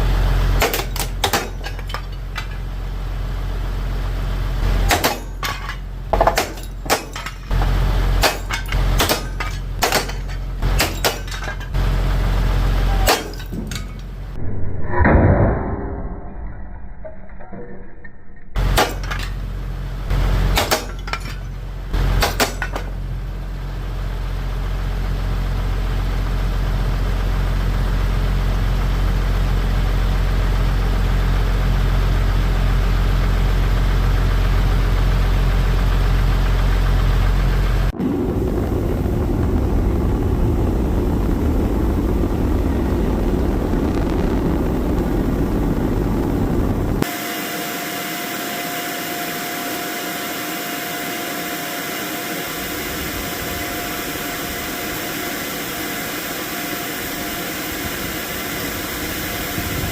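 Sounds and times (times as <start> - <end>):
rough noisy rumble: 0.0 - 14.5, 18.6 - 47.5, 50.8 - 59.9
machine humming: 18.6 - 59.9.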